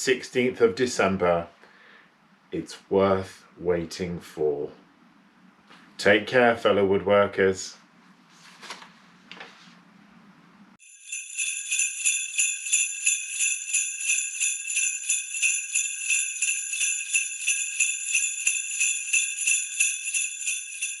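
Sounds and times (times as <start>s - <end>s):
small bells shaken in rhythm: 10.8s - 21.0s.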